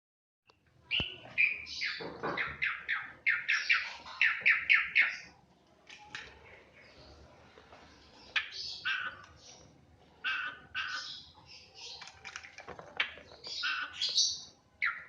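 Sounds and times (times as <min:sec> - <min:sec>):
starling calling harsh notes: 0:08.4 - 0:09.5, 0:10.2 - 0:11.4.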